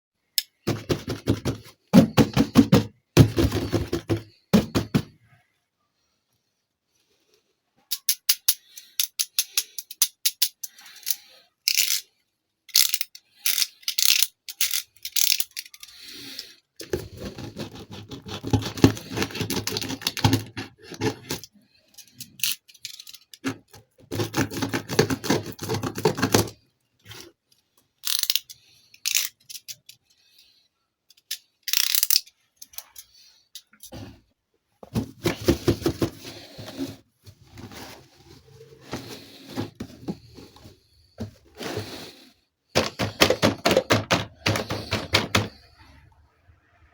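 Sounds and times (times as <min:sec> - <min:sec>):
packaging rustling and rubbing: 0:00.7 - 0:05.0, 0:16.8 - 0:21.5, 0:23.4 - 0:26.5, 0:34.8 - 0:45.6.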